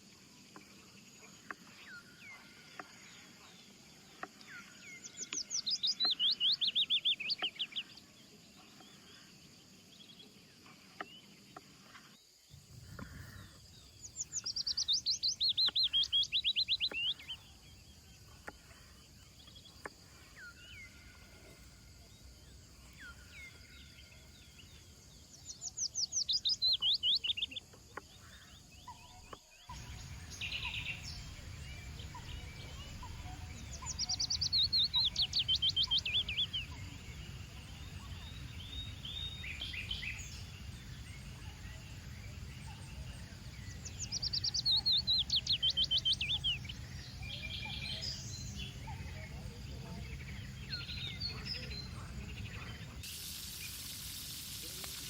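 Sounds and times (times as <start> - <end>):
songbird singing: 0.0 - 55.0
soft bird calls: 10.2 - 55.0
steady low rumble: 29.8 - 53.0.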